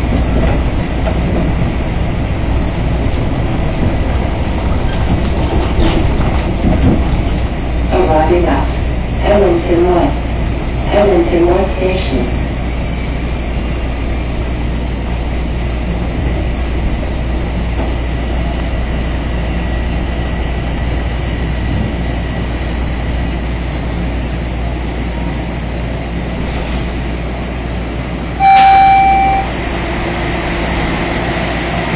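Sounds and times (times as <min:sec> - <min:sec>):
subway train rumbling: 0:00.0 - 0:31.9
loud steady tone: 0:28.4 - 0:29.7.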